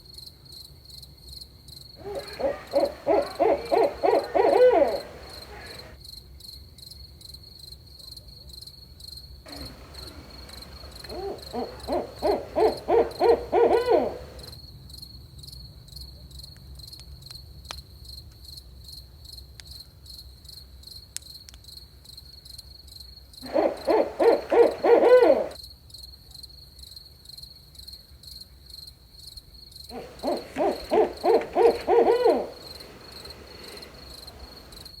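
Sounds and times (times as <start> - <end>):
cricket trilling: 2.0 - 5.9, 9.5 - 14.6, 23.4 - 25.6, 29.9 - 35.0
owl hooting: 2.0 - 6.0, 9.5 - 14.6, 23.4 - 25.6, 29.9 - 35.0.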